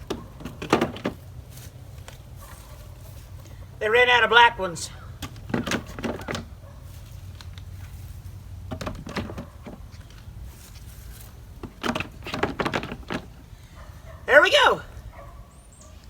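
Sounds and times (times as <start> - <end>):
plastic crates knocking: 0.0 - 1.3, 5.2 - 6.5, 8.6 - 10.0, 11.6 - 13.4.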